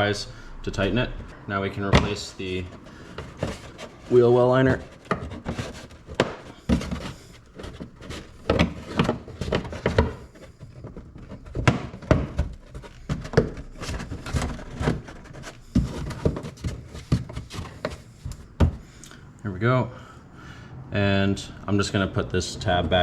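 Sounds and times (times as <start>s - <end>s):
plastic rubbing: 0.0s - 19.0s, 21.8s - 23.0s
plastic liner knocks and thunks: 4.7s - 18.9s.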